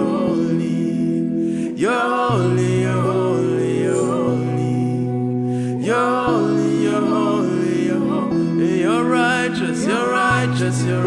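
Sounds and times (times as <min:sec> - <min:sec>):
person singing wordless phrases: 0:00.0 - 0:11.0.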